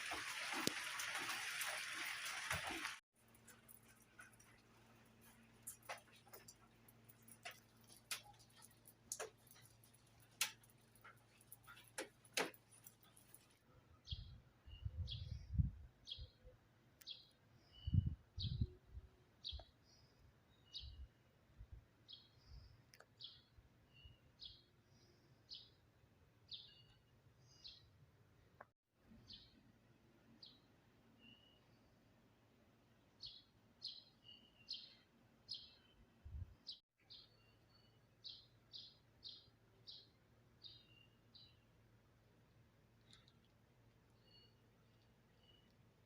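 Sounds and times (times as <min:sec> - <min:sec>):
small bird chirping: 0:44.1 - 0:45.8.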